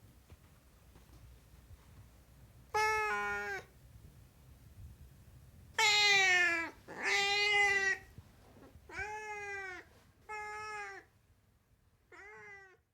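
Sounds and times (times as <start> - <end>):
cat meowing: 2.7 - 3.7, 5.8 - 8.1, 8.9 - 11.1, 12.1 - 12.8.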